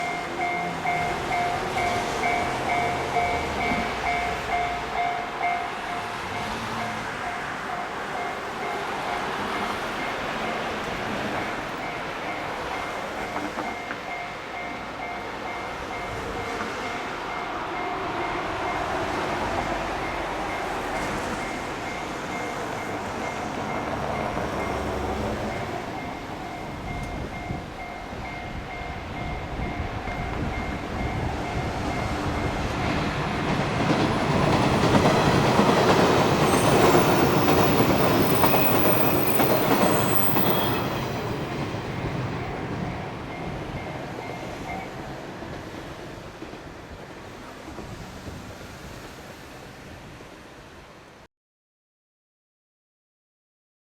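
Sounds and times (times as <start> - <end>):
level crossing bell ringing: 0.0 - 10.7, 21.9 - 45.0
train wheels rushing on rails: 0.0 - 49.8.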